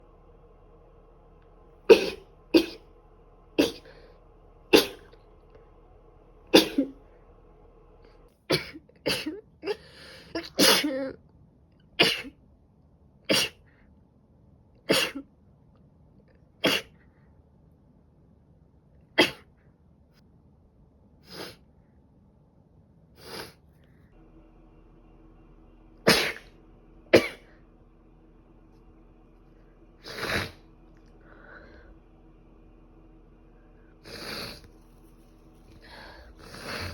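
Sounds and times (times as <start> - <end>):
woman sneezing: 10.4 - 11.1.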